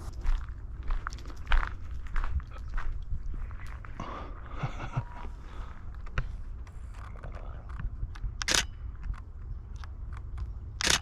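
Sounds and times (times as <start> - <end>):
low rumble of handling noise: 0.0 - 11.0
camera shutter firing: 8.4 - 8.7, 10.8 - 11.0.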